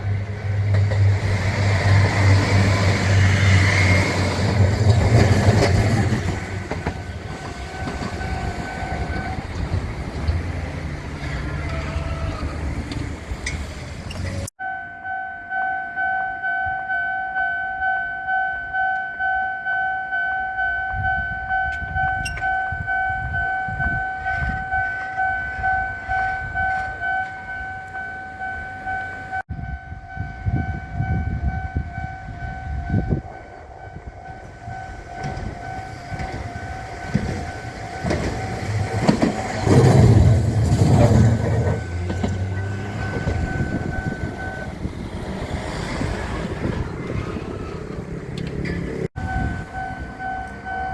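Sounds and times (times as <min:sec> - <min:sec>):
train wheels clacking: 0:00.5 - 0:10.6, 0:34.4 - 0:50.9
level crossing warning bell: 0:03.1 - 0:09.7, 0:14.6 - 0:40.8, 0:41.4 - 0:44.9, 0:49.2 - 0:50.9.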